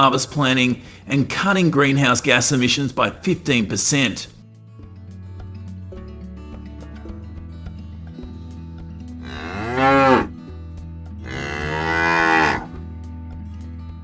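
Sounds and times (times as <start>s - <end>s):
soft background music: 0.0s - 14.0s
cattle mooing: 9.2s - 10.4s, 11.2s - 12.8s.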